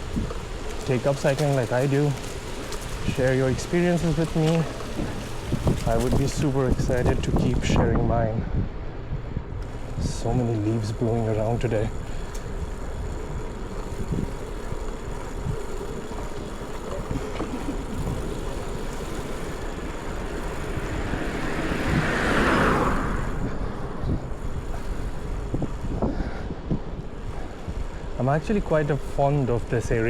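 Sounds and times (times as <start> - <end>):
street traffic: 0.0 - 30.0
wind rumble: 0.0 - 30.0
car passing close by: 20.5 - 24.1.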